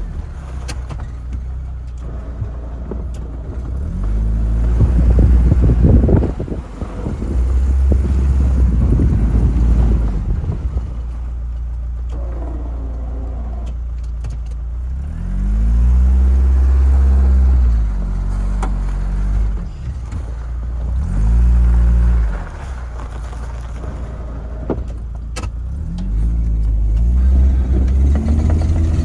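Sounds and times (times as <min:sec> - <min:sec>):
car engine running and revving: 0:00.0 - 0:29.0.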